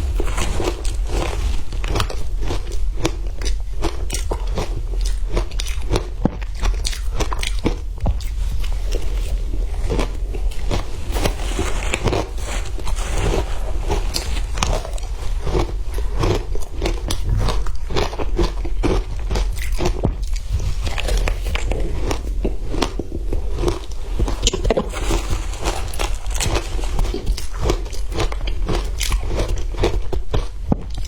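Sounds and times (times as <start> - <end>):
ice being crunched by teeth: 21.0 - 30.0.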